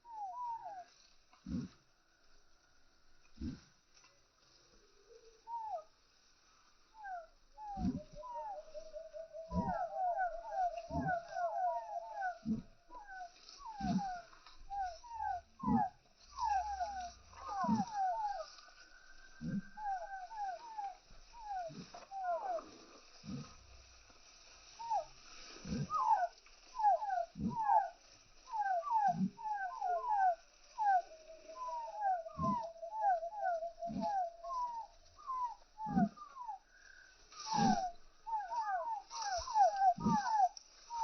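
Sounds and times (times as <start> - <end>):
chicken clucking: 7.6 - 18.8, 28.6 - 36.4
chicks peeping: 8.1 - 12.5.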